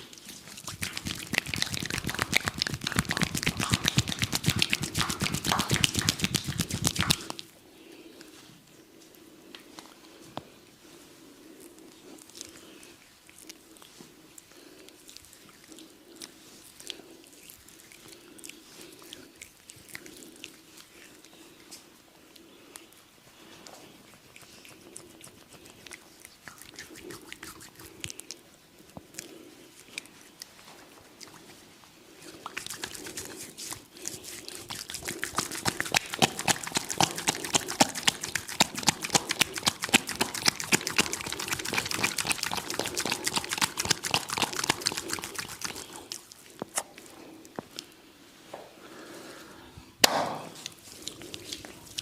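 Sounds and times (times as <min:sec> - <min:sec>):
oiled hands smacking on skin: 0:00.0 - 0:07.5, 0:32.4 - 0:47.8.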